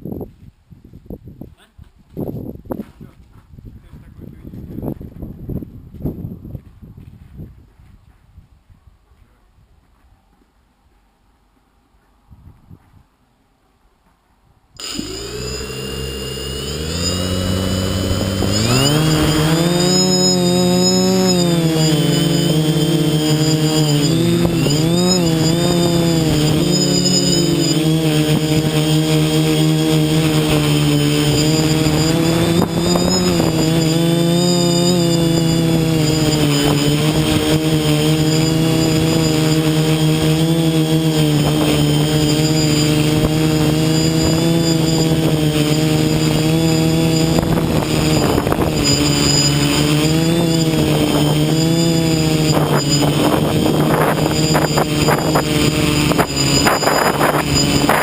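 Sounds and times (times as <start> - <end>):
drone propellers whining: 14.8 - 58.0.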